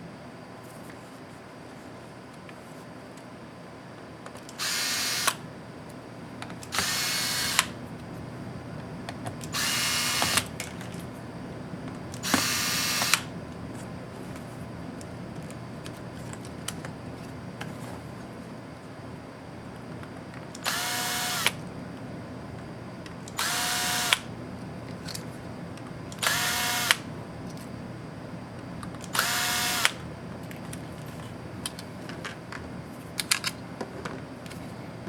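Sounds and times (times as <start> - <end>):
electric screwdriver whirring: 4.5 - 5.4, 6.7 - 7.8, 9.4 - 10.5, 12.2 - 13.3, 20.6 - 21.6, 23.3 - 24.3, 26.2 - 27.1, 29.0 - 30.0.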